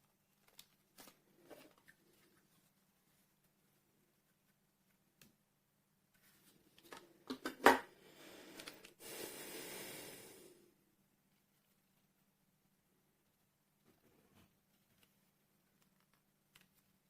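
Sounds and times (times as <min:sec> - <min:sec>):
rustling: 0:00.0 - 0:05.1.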